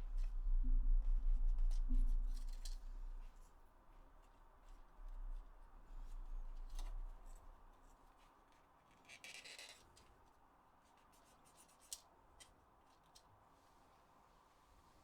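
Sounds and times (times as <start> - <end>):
low bump: 0.0 - 3.3.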